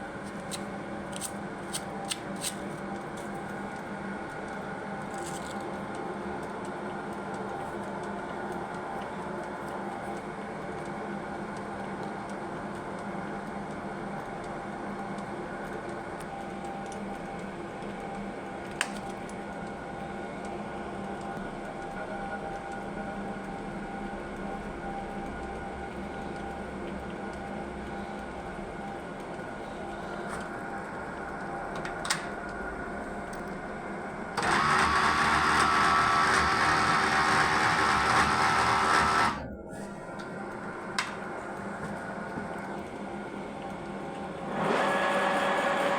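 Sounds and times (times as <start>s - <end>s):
lathe machine hum: 34.4s - 40.9s, 44.3s - 45.9s.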